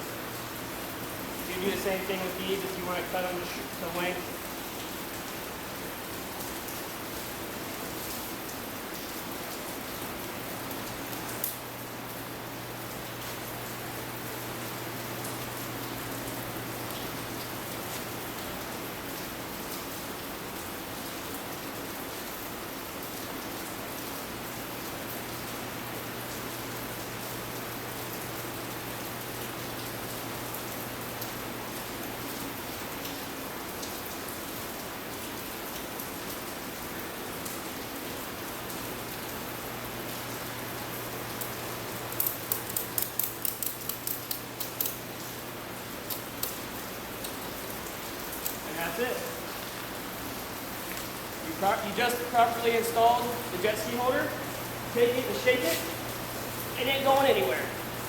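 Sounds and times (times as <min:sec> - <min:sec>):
steady hiss: 0:01.3 - 0:04.6, 0:41.1 - 0:58.0
ratchet strap clicking: 0:42.1 - 0:45.0.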